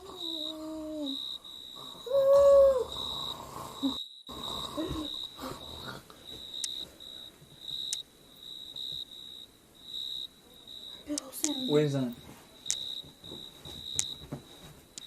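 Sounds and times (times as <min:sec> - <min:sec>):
high chirping pulses: 0:00.2 - 0:14.2
man snoring: 0:02.8 - 0:06.1.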